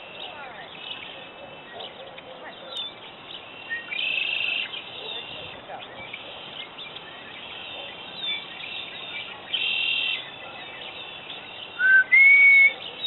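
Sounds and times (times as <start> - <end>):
blackbirds chirping and trilling: 0.0 - 13.0
whistled bird notes: 3.6 - 13.0.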